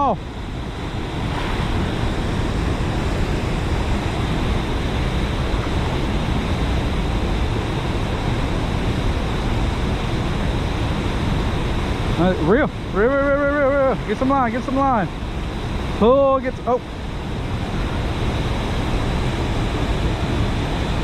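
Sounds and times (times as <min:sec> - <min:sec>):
wind buffeting microphone: 0:00.0 - 0:12.0
water rushing from a spillway: 0:00.0 - 0:12.4.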